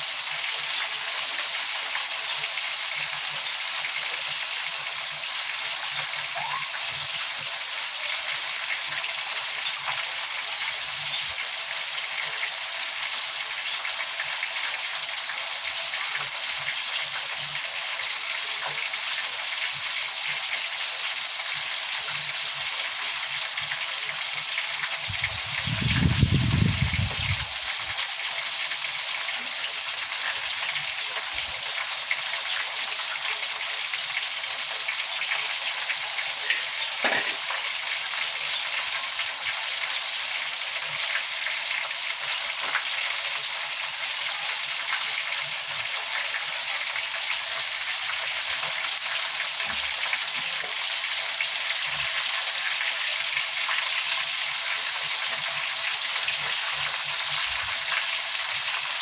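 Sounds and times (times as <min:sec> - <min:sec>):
chicken deep-frying in oil: 0:00.0 - 0:59.0.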